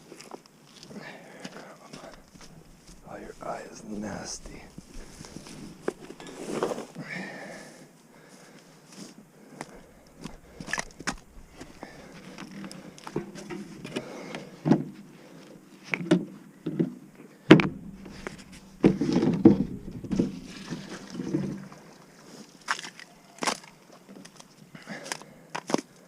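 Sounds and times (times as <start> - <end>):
knocks and clunks: 2.0 - 6.9, 9.8 - 15.2, 17.5 - 21.8
clattering: 9.8 - 14.9, 17.5 - 21.8.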